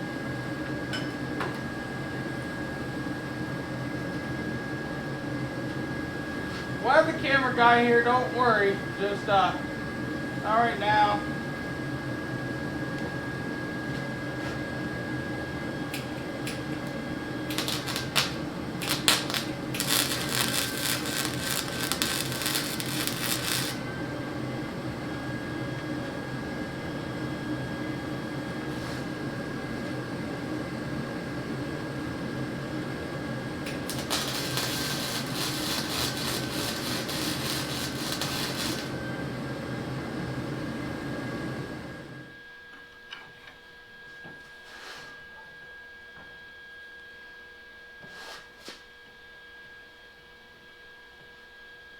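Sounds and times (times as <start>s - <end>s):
space heater humming: 0.0s - 42.4s
electric welding crackle: 16.0s - 24.0s, 33.6s - 39.0s.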